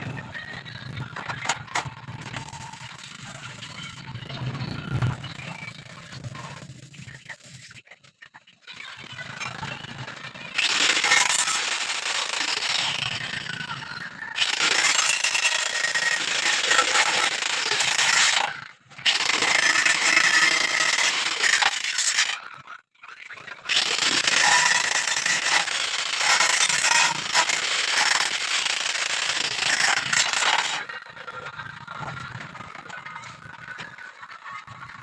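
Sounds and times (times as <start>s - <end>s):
electric arc welding crackling: 19.1s - 22.4s.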